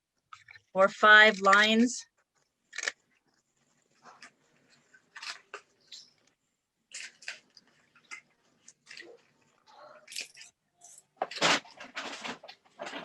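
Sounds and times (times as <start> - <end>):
paper rustling: 11.2 - 13.0.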